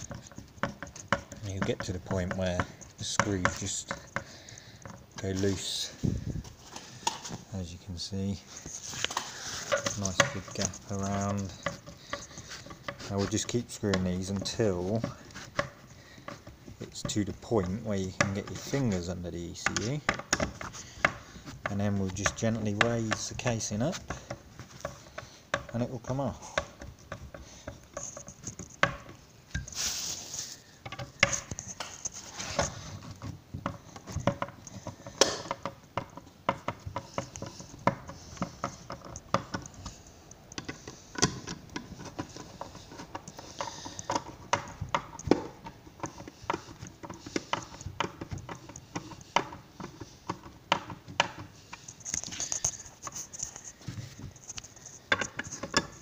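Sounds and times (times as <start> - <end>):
short hiss: 29.7 - 30.4.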